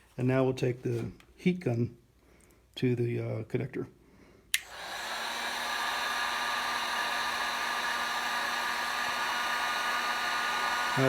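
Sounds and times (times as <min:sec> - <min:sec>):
heat gun switch click: 0:04.5 - 0:05.0
heat gun blowing hiss and hum: 0:04.5 - 0:11.0.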